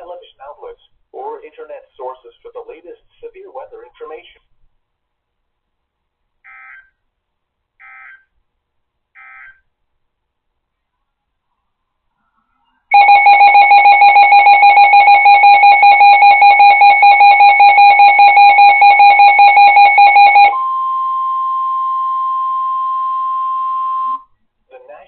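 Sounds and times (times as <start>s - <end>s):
rapid electronic alarm beeping: 12.9s - 20.6s.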